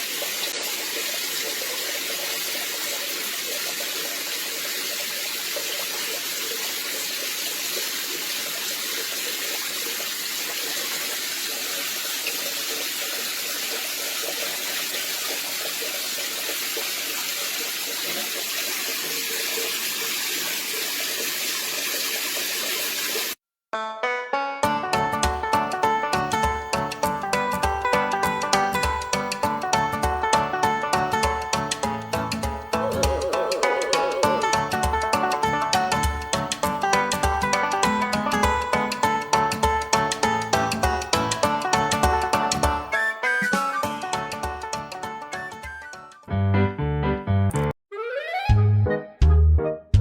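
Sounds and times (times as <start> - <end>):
running water rushing: 0.0 - 23.4, 32.1 - 40.6.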